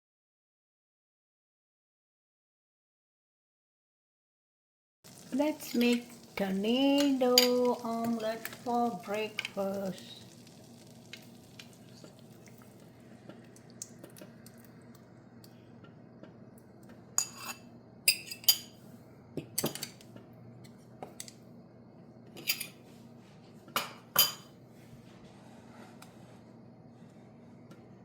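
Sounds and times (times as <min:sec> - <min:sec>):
low steady hum: 0:05.1 - 0:28.0
utensil clinking on cookware: 0:06.8 - 0:08.6, 0:17.2 - 0:18.8, 0:22.4 - 0:22.8, 0:23.8 - 0:24.5.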